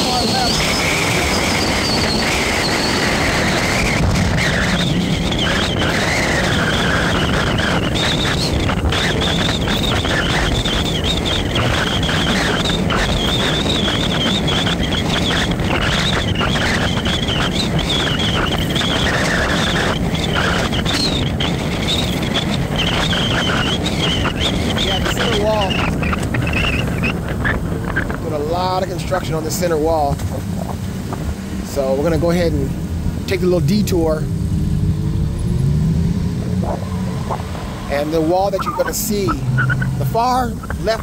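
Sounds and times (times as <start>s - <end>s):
high wavering whine: 0.0s - 29.9s, 31.7s - 41.0s
vehicle road and engine noise: 0.0s - 41.0s.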